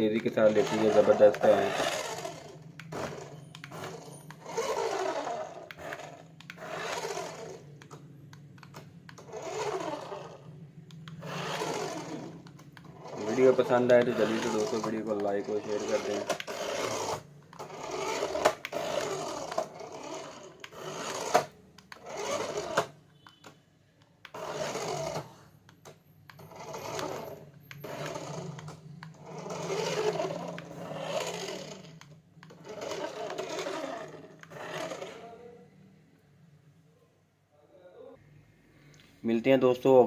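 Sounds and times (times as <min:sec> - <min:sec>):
toy car motor whirring: 0:00.0 - 0:23.4, 0:24.2 - 0:35.6.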